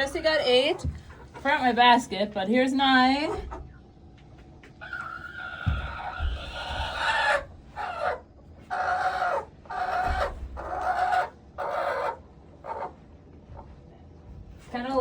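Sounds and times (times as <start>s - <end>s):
chicken squawking: 4.8s - 13.0s.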